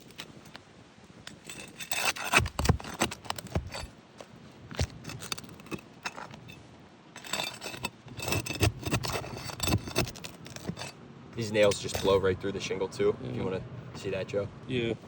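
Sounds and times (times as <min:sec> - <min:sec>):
metal tool scraping shingles: 0:01.3 - 0:04.0, 0:04.7 - 0:06.6, 0:07.2 - 0:11.0, 0:11.6 - 0:12.3.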